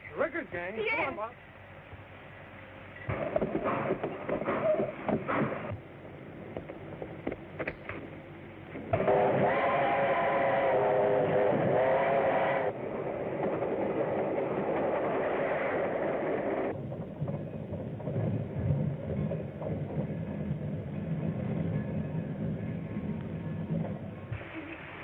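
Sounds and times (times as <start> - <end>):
steam train running on rails: 0.0 - 25.0
train whistle wavering: 9.0 - 12.8.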